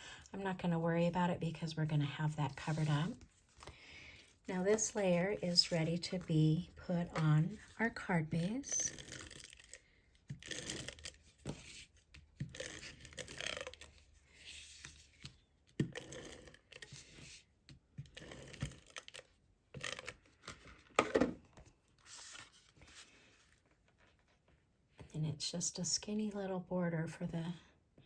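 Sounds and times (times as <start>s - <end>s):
paper rustling and scraping: 22.0s - 24.4s.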